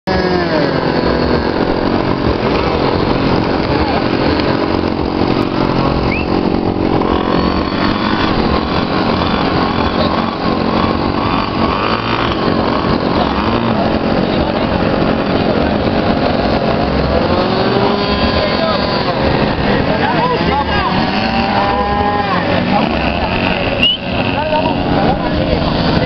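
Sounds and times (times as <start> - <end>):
model airplane engines droning: 0.1 - 26.0.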